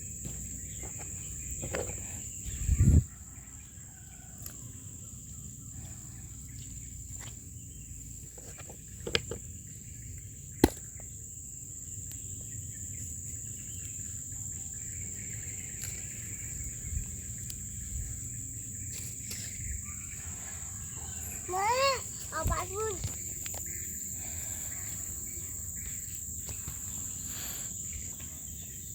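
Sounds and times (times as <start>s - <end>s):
insects trilling: 0.0s - 28.9s.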